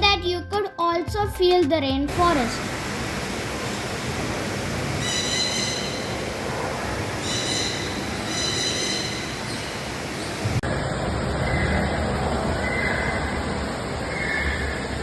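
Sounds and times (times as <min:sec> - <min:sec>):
falling rain and water hiss: 0:02.1 - 0:12.6
shrill high squeals: 0:05.0 - 0:06.2.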